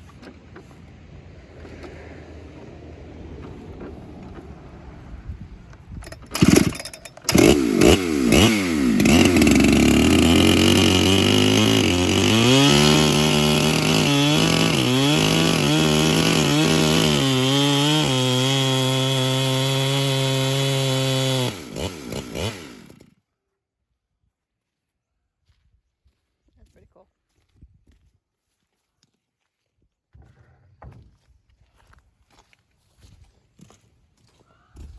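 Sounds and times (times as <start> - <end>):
electric chainsaw cutting log: 6.0 - 23.1.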